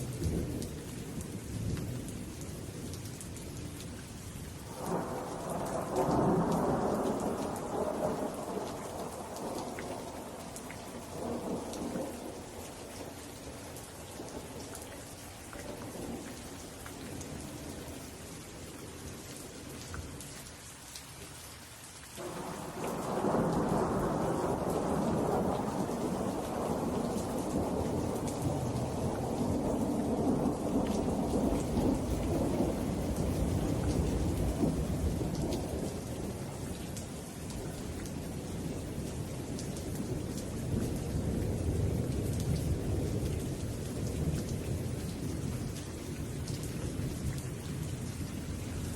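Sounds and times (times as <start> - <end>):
steady rain: 0.0 - 48.9
rolling thunder: 4.7 - 12.6, 22.2 - 36.8.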